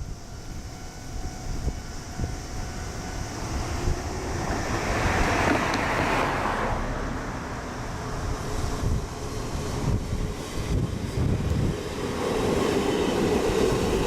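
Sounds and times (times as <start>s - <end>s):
wind noise on microphone: 0.0s - 14.0s
vehicle passing by: 3.4s - 10.0s.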